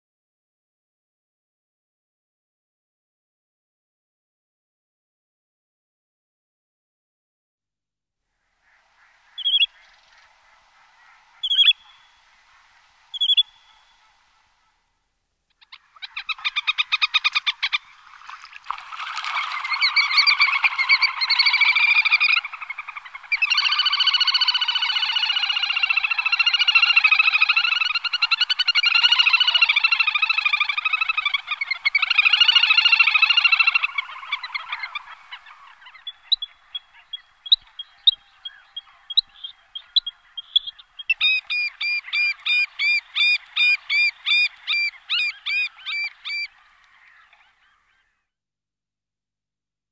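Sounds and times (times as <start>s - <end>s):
bird calling with rapid trill: 9.4s - 9.9s, 11.4s - 12.3s, 13.1s - 14.0s, 18.8s - 48.1s.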